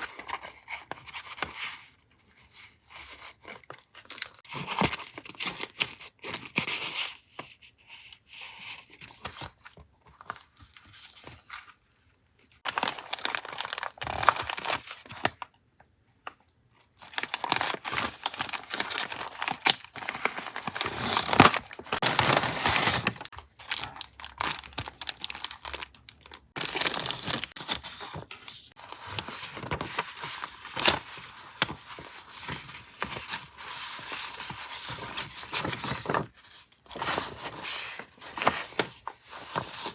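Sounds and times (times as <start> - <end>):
paper crinkling and tearing: 12.6 - 15.4, 17.0 - 39.9.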